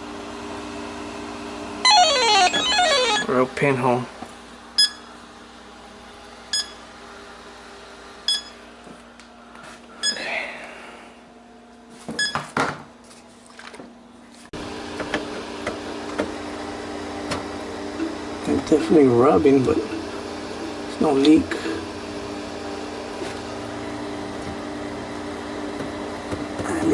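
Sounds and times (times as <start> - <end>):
refrigerator hum: 0.0 - 26.9
short electronic beeps: 1.9 - 3.3.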